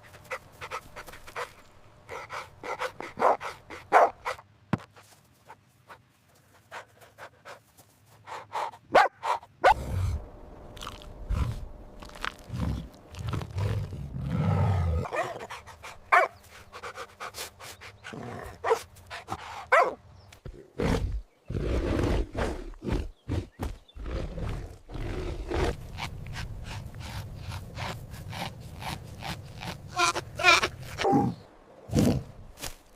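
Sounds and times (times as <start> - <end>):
dog barking: 3.2 - 4.4, 8.9 - 9.8, 16.1 - 16.4, 19.7 - 20.0
low rumbling: 9.7 - 15.0.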